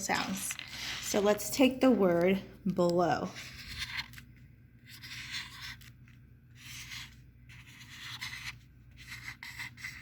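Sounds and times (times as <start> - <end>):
pen scratching on paper: 4.8 - 5.9, 6.6 - 10.0.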